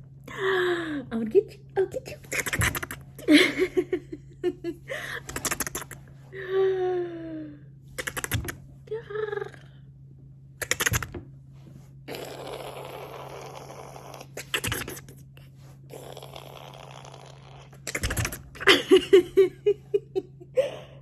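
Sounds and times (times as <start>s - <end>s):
mouth clicking and smacking: 2.2s - 3.3s, 5.2s - 6.1s, 8.0s - 8.6s, 10.6s - 11.2s, 12.1s - 15.2s, 15.9s - 18.8s.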